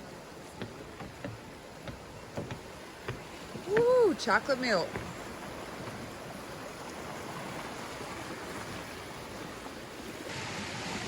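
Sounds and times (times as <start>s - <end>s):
rushing water hiss: 0.0s - 11.0s.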